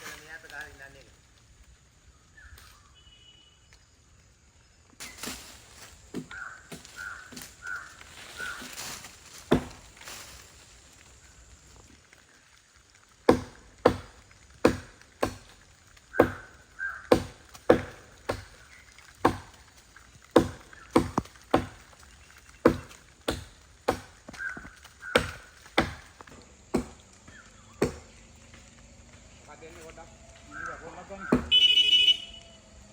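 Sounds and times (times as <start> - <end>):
axe chopping wood: 8.4 - 9.9, 13.3 - 19.6, 20.3 - 22.0, 22.6 - 28.2, 31.2 - 31.6.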